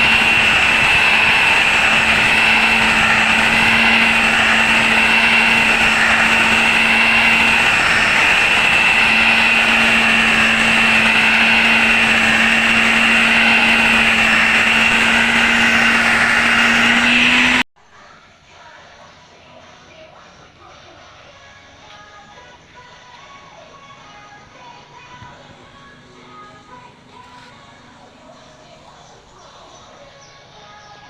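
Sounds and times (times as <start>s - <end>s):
power tool motor whining: 0.0s - 17.7s.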